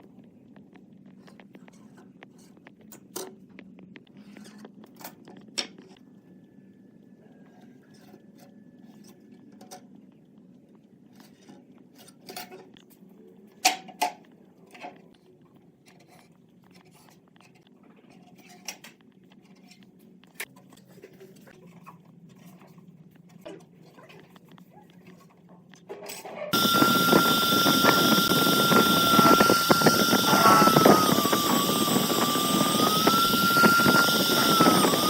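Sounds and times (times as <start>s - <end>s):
power tool whining: 26.5s - 35.0s.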